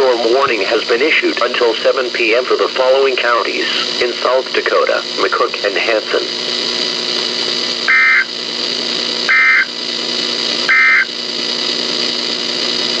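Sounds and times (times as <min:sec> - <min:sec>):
radio hiss: 0:00.0 - 0:13.0
warbling data bursts: 0:07.9 - 0:08.4, 0:09.3 - 0:09.8, 0:10.7 - 0:11.2.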